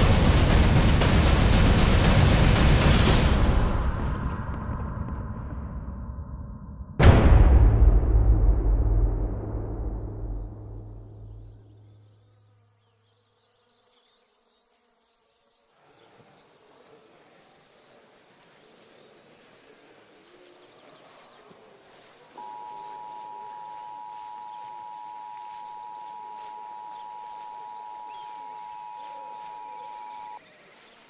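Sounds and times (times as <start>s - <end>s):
crickets chirping: 9.7s - 31.0s
two-tone alert beep: 22.4s - 30.4s.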